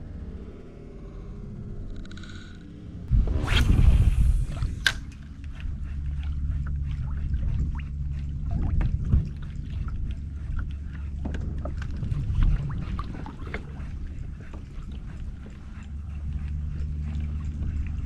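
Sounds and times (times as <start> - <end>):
water splashing against hull: 3.8 - 15.7.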